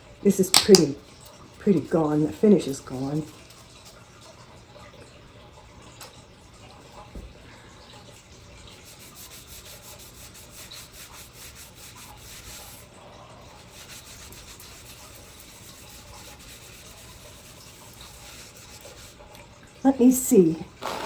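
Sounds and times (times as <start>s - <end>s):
hand scrubbing on copper: 1.6s - 3.9s, 8.7s - 19.4s.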